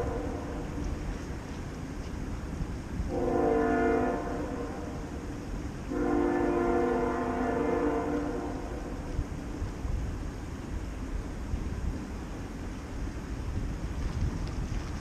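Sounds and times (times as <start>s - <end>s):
train air horn blasts: 0.0s - 0.8s, 3.1s - 5.2s, 5.9s - 9.1s.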